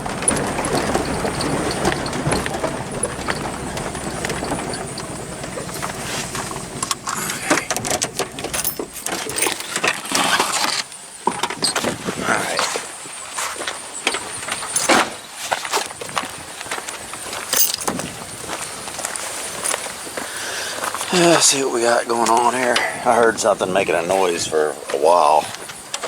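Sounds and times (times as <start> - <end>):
low rumble: 0.0 - 9.0
metal parts and tools clinking: 0.0 - 10.8, 14.6 - 15.0, 17.5 - 18.1.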